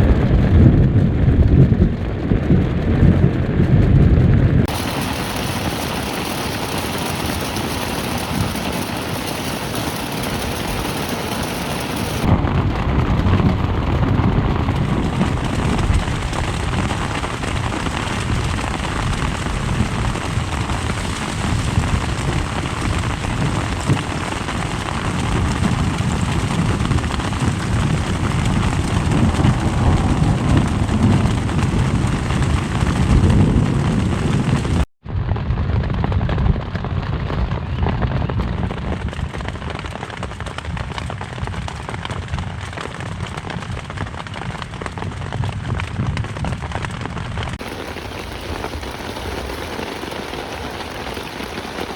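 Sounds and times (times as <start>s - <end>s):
deep low rumble: 0.0s - 34.9s
heavy rain: 4.6s - 34.9s, 47.5s - 51.9s.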